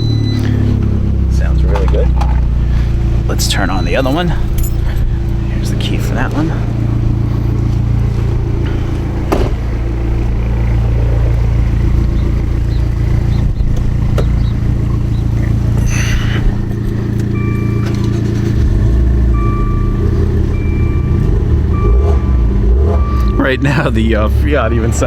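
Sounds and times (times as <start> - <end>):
short electronic beeps: 0.0 - 0.7, 17.3 - 23.6
car engines idling: 0.0 - 25.0.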